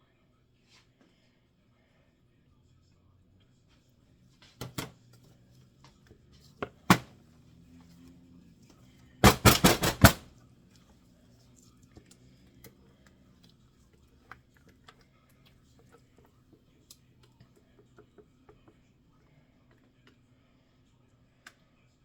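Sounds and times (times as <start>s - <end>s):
loud knocks and clatters: 9.2s - 10.3s.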